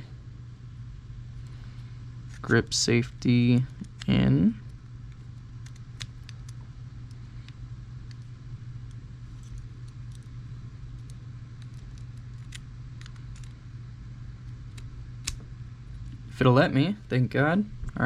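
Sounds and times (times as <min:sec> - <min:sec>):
steady low hum: 0:00.0 - 0:18.0
pistol parts clicking: 0:11.0 - 0:13.5.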